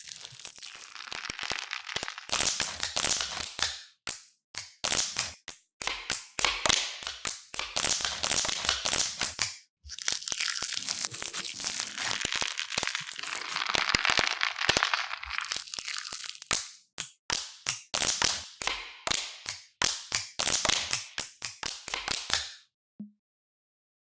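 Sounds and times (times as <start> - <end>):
crackling and crunching: 0.0 - 4.2, 6.7 - 18.3.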